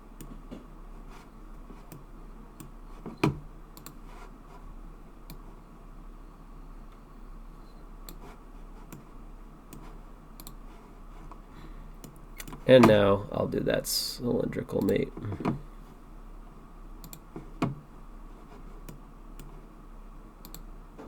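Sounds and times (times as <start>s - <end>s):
low steady hum: 0.0s - 21.0s
computer mouse clicks: 1.8s - 4.0s, 8.0s - 8.2s, 8.9s - 9.1s, 9.7s - 10.6s, 12.0s - 12.6s, 17.0s - 17.8s, 18.8s - 19.6s, 20.4s - 20.7s.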